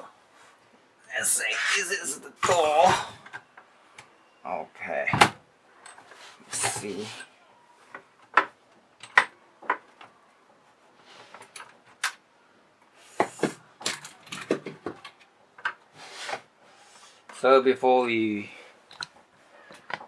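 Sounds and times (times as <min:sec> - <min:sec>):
metal lock parts clicking: 0:08.4 - 0:09.4.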